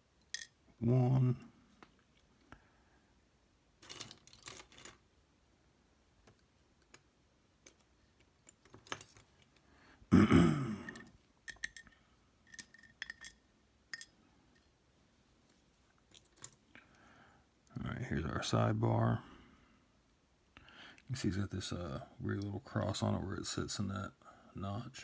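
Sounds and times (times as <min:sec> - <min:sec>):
small metallic clicks and rattles: 0:11.0 - 0:14.7.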